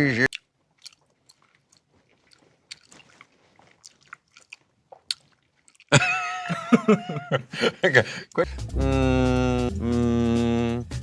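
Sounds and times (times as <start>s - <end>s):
person chewing food: 0.2s - 6.6s.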